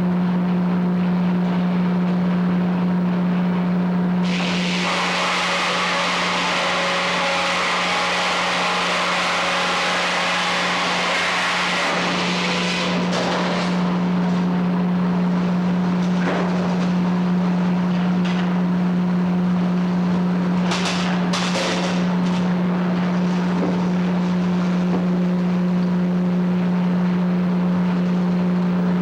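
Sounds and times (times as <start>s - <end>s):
sawmill low drone: 0.0s - 29.0s.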